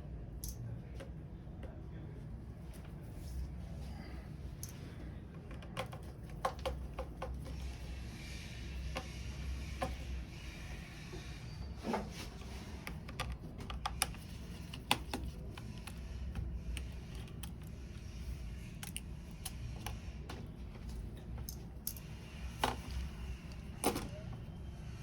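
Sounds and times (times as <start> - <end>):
steady low hum: 0.0 - 25.0
small tools clicking and tapping: 0.4 - 1.1, 4.6 - 7.7, 12.8 - 20.5, 21.2 - 23.1.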